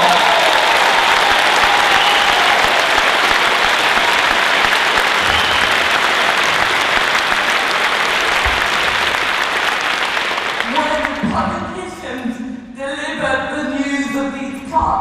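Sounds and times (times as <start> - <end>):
crowd applauding: 0.0 - 11.2.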